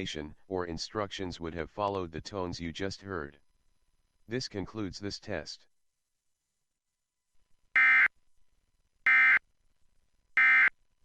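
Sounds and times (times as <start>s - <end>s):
digital modem tone bursts: 7.8s - 8.1s, 9.1s - 9.4s, 10.4s - 10.7s.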